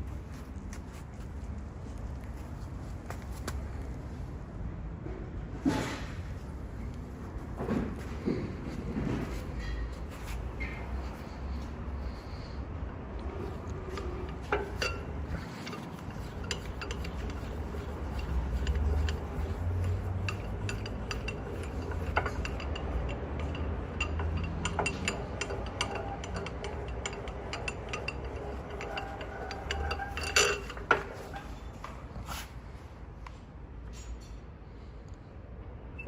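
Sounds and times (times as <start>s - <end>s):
steady low hum: 6.2s - 33.6s
metal clicks and clinks: 13.2s - 31.6s.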